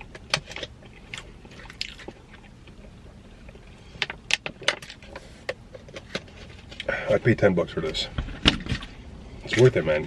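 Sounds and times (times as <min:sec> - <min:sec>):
chewing pizza with crunches: 0:00.0 - 0:07.0.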